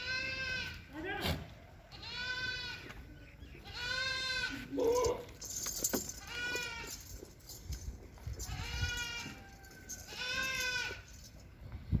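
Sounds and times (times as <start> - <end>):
goats bleating: 0.0 - 0.9, 1.9 - 3.0, 3.6 - 5.2, 6.2 - 7.1, 8.4 - 11.0.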